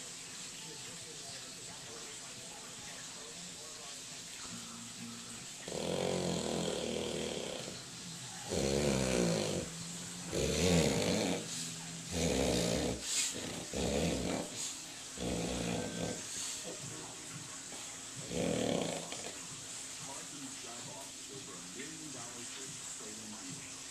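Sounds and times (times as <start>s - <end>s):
man snoring loudly: 5.6s - 14.6s, 15.2s - 16.8s, 18.2s - 19.4s.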